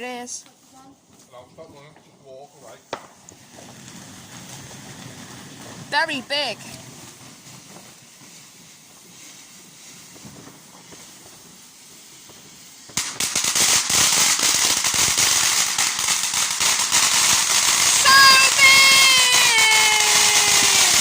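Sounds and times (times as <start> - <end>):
faint background noise: 0.0 - 13.3
firework crackling bangs: 0.0 - 21.0.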